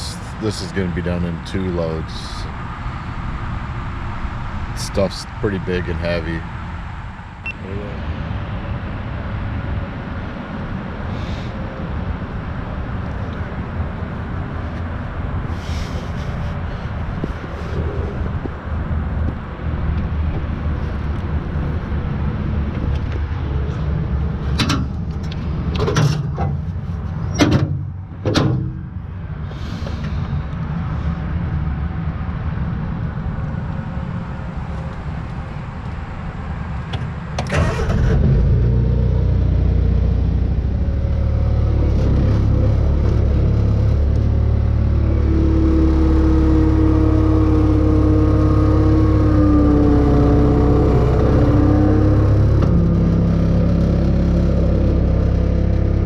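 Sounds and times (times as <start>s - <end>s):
vehicle engine running: 0.0s - 56.0s
rising whine: 1.6s - 25.8s, 37.5s - 56.0s.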